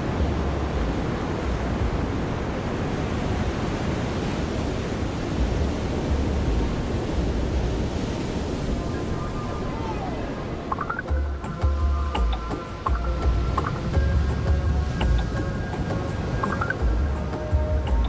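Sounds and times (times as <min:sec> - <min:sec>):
ocean surf breaking: 0:00.0 - 0:18.0.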